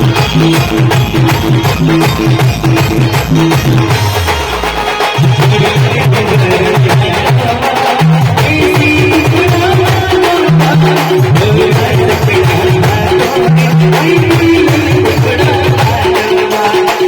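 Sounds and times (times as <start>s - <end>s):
fast drum beat: 0.0s - 17.0s
held melody line: 0.0s - 17.0s.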